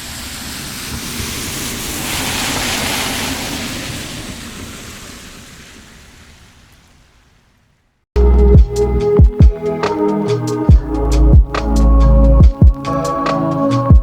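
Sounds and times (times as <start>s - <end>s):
steady rushing noise: 0.0s - 6.4s.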